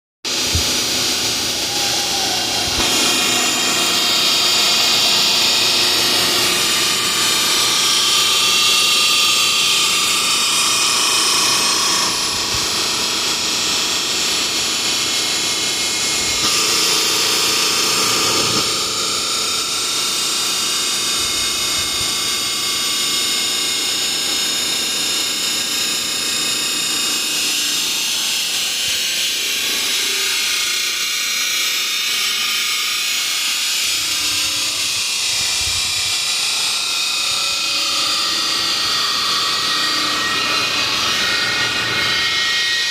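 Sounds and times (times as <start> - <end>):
cnc router spindle whine: 0.3 - 42.9
router cutting rushing noise: 0.3 - 42.9.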